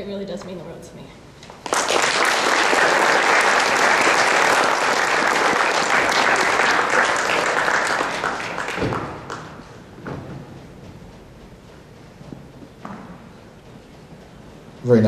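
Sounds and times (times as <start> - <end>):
audience applauding: 1.6 - 9.9.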